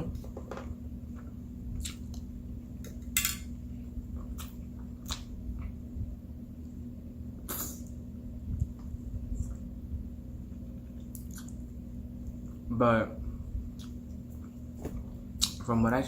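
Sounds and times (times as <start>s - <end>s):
steady low hum: 0.0s - 16.0s
wet mouth sounds: 7.4s - 7.9s.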